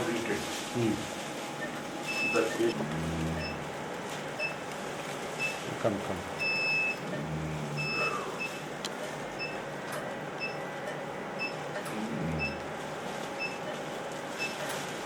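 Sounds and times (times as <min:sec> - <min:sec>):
steady machine hum: 0:00.0 - 0:15.0
short electronic beeps: 0:07.8 - 0:08.6.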